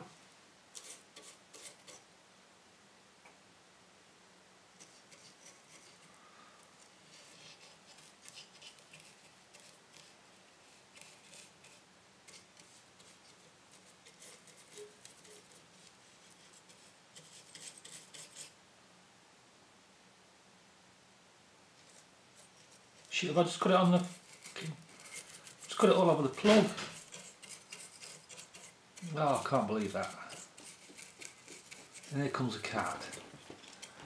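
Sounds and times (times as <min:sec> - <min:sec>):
brush scratching on circuit board: 0:00.7 - 0:02.0, 0:04.8 - 0:06.1, 0:07.0 - 0:18.6, 0:21.8 - 0:34.0.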